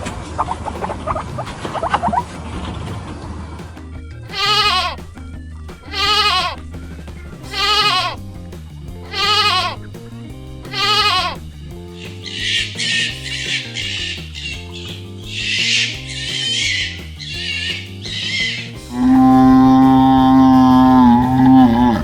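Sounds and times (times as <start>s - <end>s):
background music: 0.0s - 22.0s
goat bleating: 7.5s - 8.2s.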